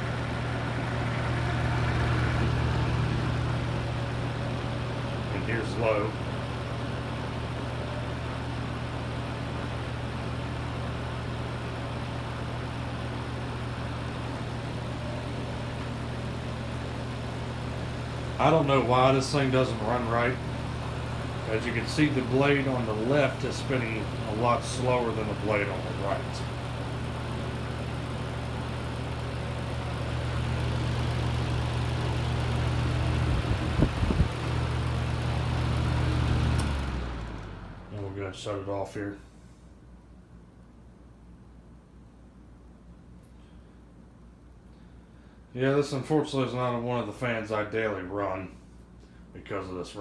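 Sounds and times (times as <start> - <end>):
box fan motor humming: 0.0 - 39.0
air rushing from fan: 0.0 - 39.9.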